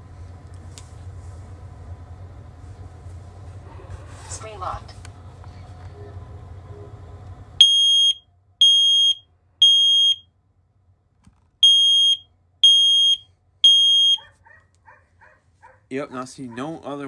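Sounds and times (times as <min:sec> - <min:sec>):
smoke alarm beeps: 0:07.6 - 0:10.3, 0:11.6 - 0:14.3.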